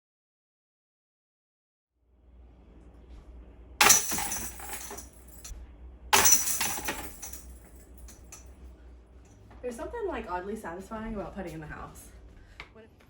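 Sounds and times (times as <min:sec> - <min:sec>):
chains jangling: 0:03.8 - 0:05.5, 0:06.2 - 0:08.4
disc striking basket chains: 0:03.8 - 0:05.5, 0:06.2 - 0:08.4.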